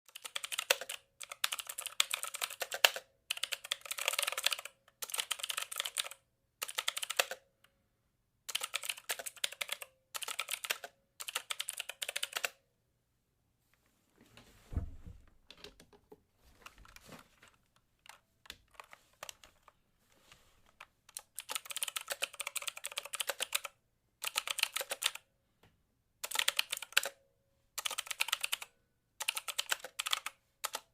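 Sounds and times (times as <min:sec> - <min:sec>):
keyboard typing: 0:00.1 - 0:07.5, 0:08.5 - 0:12.6, 0:16.6 - 0:19.8, 0:20.6 - 0:25.3, 0:26.2 - 0:27.2, 0:27.8 - 0:30.9
low thud: 0:14.7 - 0:15.3.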